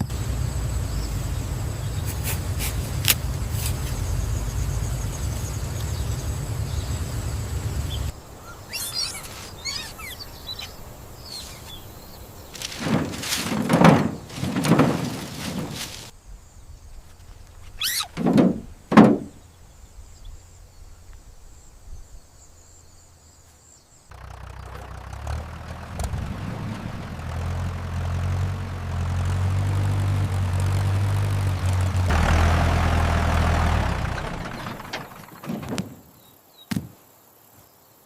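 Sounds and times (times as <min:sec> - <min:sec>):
low engine-like hum with rushing: 0:00.0 - 0:16.2, 0:24.1 - 0:36.0
short knocks: 0:12.6 - 0:16.1, 0:18.1 - 0:19.4.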